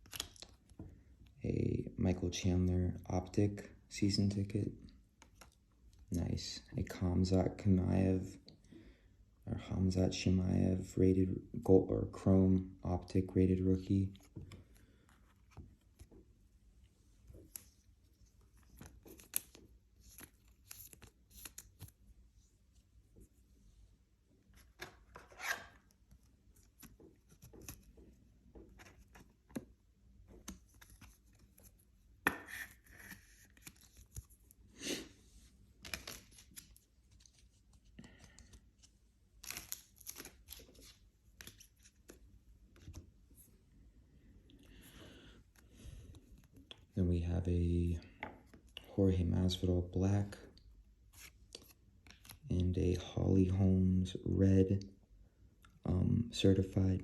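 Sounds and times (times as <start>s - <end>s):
trading card wrappers rustling: 17.2s - 22.1s, 24.4s - 34.7s, 35.7s - 43.5s.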